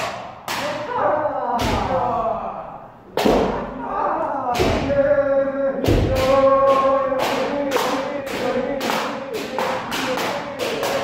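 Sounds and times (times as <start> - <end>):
people shouting: 0.5 - 11.0.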